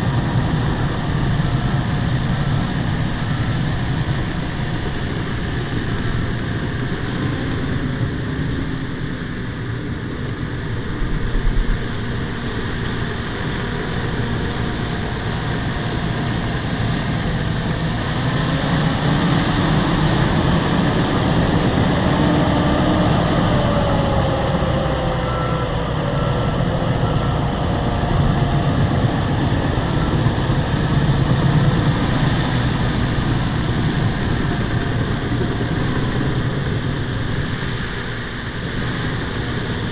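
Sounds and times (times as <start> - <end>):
bulldozer engine running: 0.0 - 39.9.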